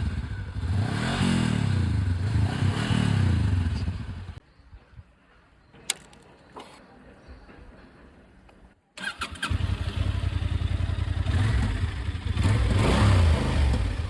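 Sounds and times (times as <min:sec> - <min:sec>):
motorcycle engine revving: 0:00.0 - 0:04.4, 0:09.0 - 0:14.0.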